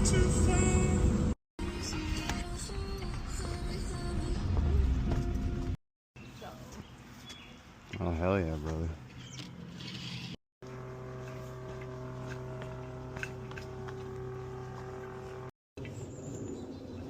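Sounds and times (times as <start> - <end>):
steady motor hum: 9.8 - 15.6.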